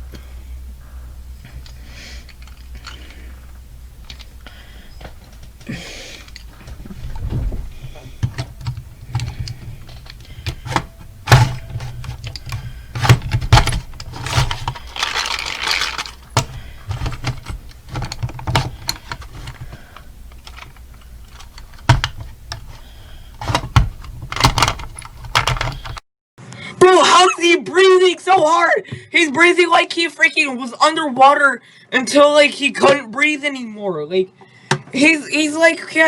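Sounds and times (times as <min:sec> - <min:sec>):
scraping: 0:00.8 - 0:26.0
plastic clock clicks and rattles: 0:08.0 - 0:26.0.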